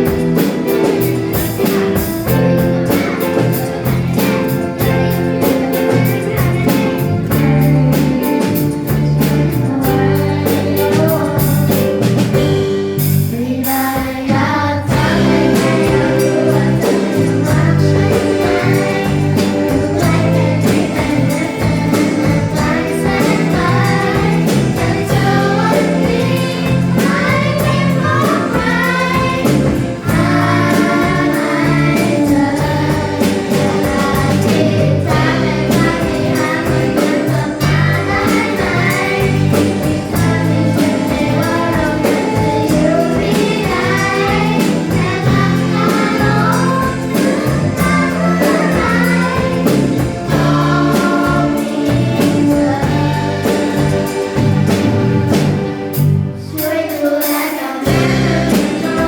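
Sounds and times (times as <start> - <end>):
pop song with singing: 0.0 - 12.5, 13.2 - 59.0.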